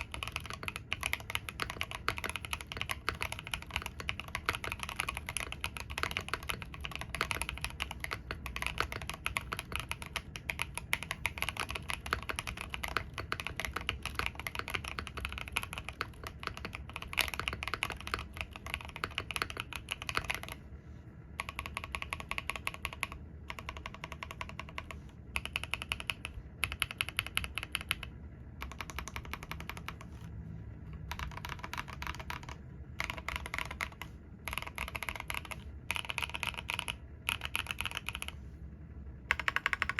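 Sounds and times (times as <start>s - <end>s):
mechanical keyboard typing: 0.0s - 20.6s, 21.4s - 30.3s, 30.9s - 38.4s, 39.2s - 39.9s.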